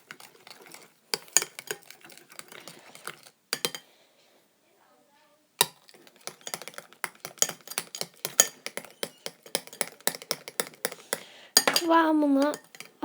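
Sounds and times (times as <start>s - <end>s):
spoon clicking against bowl: 1.2s - 3.8s, 5.6s - 13.0s.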